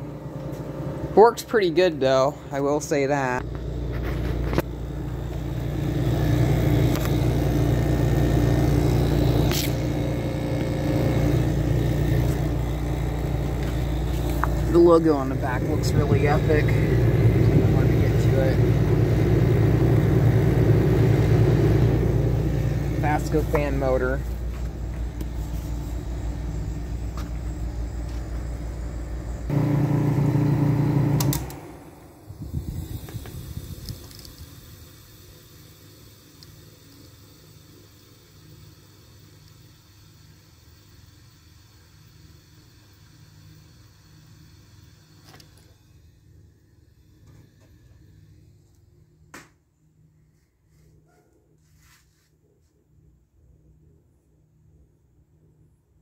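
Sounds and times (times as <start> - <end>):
air conditioner humming: 0.0 - 37.6
air conditioner clicks: 31.1 - 31.7.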